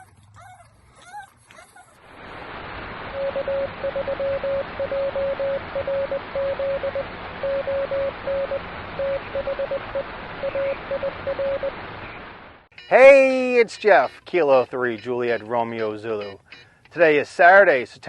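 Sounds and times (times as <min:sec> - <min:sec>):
shortwave radio static hiss: 0:02.1 - 0:14.1
morse code tone: 0:03.1 - 0:12.2, 0:14.9 - 0:16.7.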